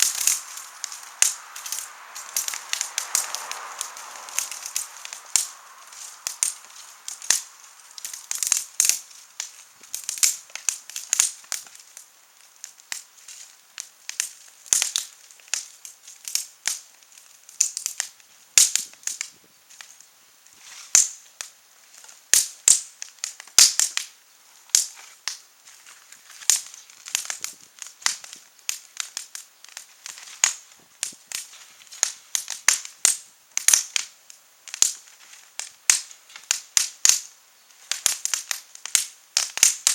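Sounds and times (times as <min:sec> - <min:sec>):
wood fire crackling: 0:00.0 - 0:39.9.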